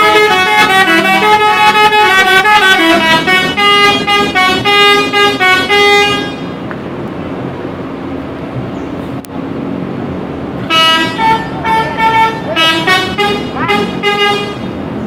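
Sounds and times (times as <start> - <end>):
multi-tone bus horn melody: 0.0 - 6.7, 10.6 - 15.0.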